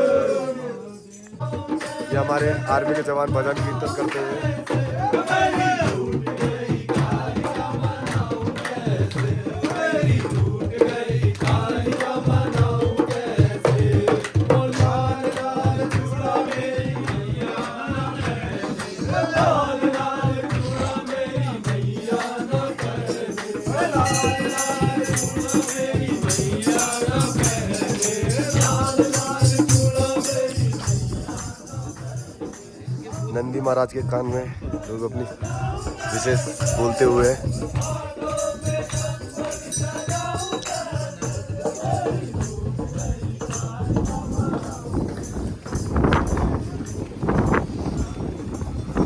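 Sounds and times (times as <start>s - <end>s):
group of voices singing: 0.0s - 49.0s
rattling percussion: 0.0s - 49.0s
drum beat: 1.3s - 47.6s
bright metallic jingling: 23.2s - 32.5s, 35.4s - 42.0s.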